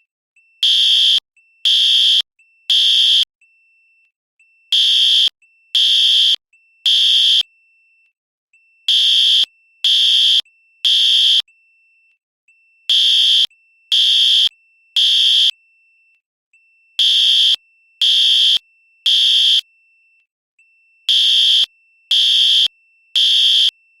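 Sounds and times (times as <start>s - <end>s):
fire alarm beeps: 0.6s - 3.3s, 4.7s - 7.5s, 8.8s - 11.5s, 12.9s - 15.6s, 17.0s - 19.7s, 20.8s - 23.8s.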